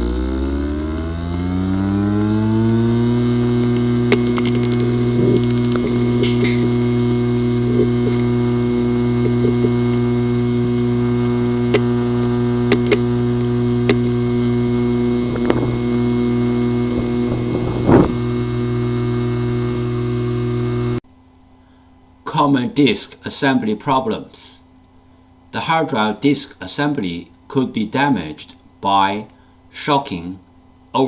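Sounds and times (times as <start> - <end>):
hard drive buzzing: 0.0 - 21.0
hard drive clicks: 2.2 - 21.0.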